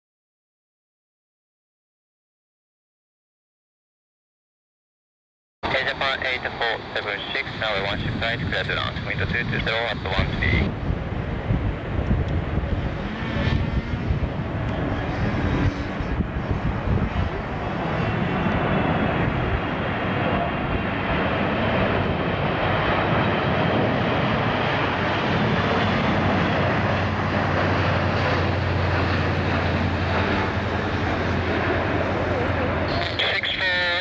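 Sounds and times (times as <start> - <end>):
jet engines of landing plane: 5.6 - 34.0
wind buffeting microphone: 7.3 - 32.9.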